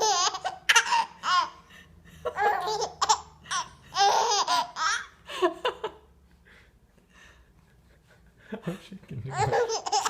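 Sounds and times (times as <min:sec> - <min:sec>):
baby laughing: 0:00.0 - 0:01.6, 0:02.2 - 0:05.3, 0:09.3 - 0:10.0.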